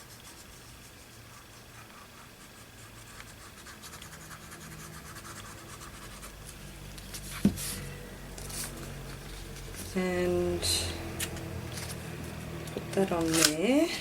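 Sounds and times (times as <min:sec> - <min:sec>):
paper rubbing and rustling: 0:08.4 - 0:10.0, 0:11.2 - 0:13.6.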